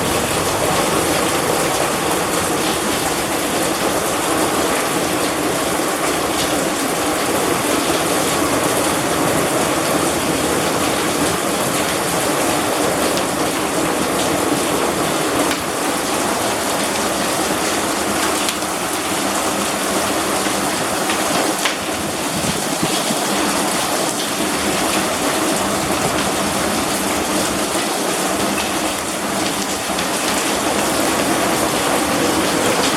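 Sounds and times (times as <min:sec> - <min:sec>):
heavy rain hissing: 0:00.0 - 0:32.9
hailstones striking: 0:07.2 - 0:32.9.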